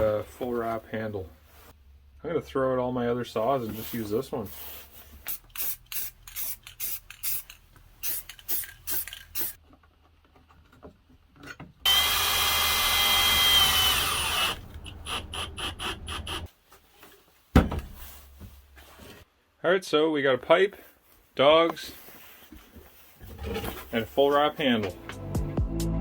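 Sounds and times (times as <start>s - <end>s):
power tool whining: 11.9s - 16.5s.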